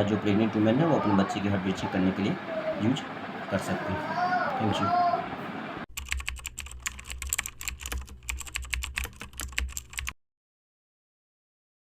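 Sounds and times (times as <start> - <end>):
keyboard typing clicks: 5.9 - 10.2.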